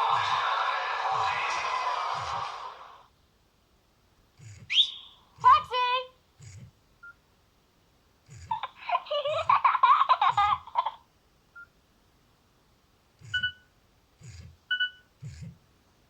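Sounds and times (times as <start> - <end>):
short phone beeps: 13.2 - 13.7, 14.7 - 15.1.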